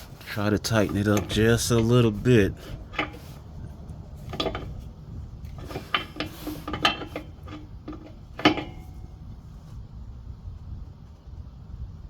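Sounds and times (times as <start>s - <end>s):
wrench clinking on metal: 5.5s - 9.1s.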